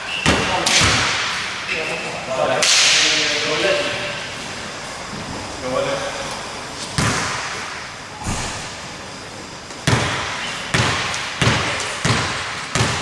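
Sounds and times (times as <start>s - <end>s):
basketball bouncing on hardwood: 9.8s - 13.0s.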